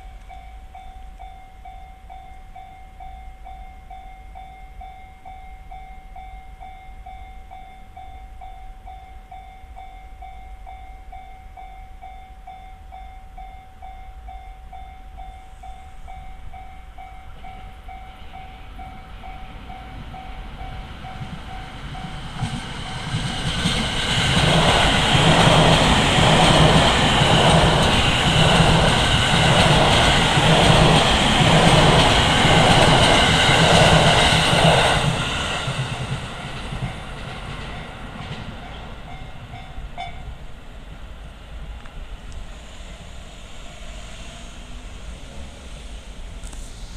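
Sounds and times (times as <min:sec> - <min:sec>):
train rushing with wheel clatter: 0:13.4 - 0:46.9.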